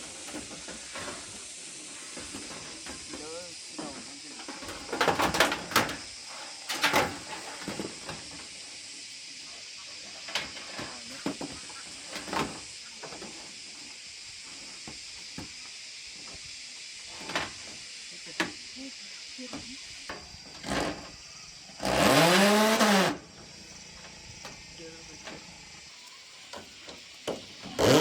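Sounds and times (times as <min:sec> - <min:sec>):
steady high hiss: 0:00.0 - 0:21.8, 0:23.0 - 0:27.8
knocks and clatters: 0:03.8 - 0:06.1.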